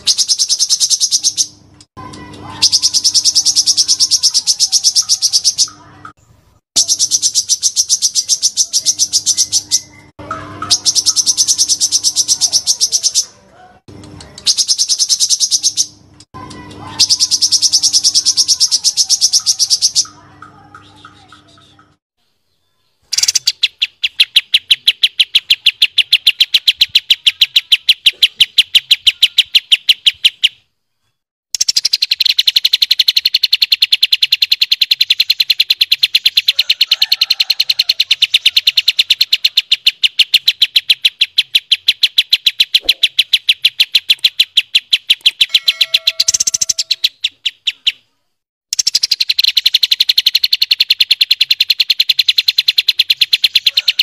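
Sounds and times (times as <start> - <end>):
songbird rapid trill: 0.0 - 5.9, 6.8 - 13.4, 14.3 - 21.9, 22.5 - 30.6, 31.5 - 48.1, 48.7 - 54.0.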